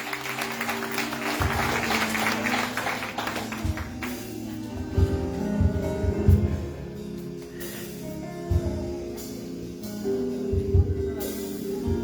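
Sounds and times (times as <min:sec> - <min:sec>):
applause: 0:00.0 - 0:04.6
music with bass and drums: 0:01.1 - 0:12.0.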